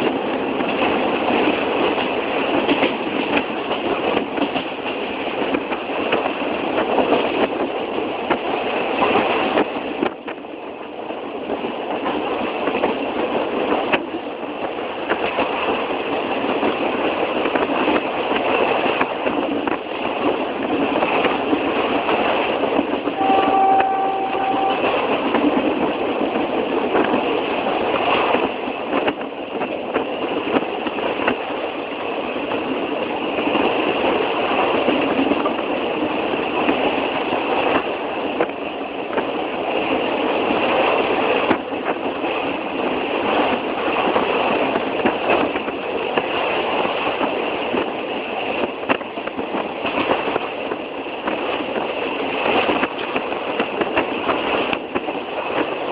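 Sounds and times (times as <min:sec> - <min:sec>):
train wheels rattling on rails: 0:00.0 - 0:55.9
short horn tone: 0:23.2 - 0:25.1.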